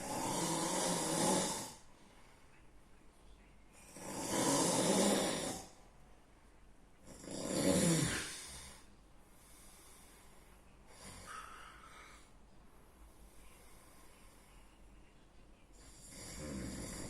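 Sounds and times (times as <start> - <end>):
person snoring heavily: 0.0 - 1.8, 3.9 - 5.8, 7.1 - 8.8, 16.0 - 17.0
faint breath: 8.2 - 16.2.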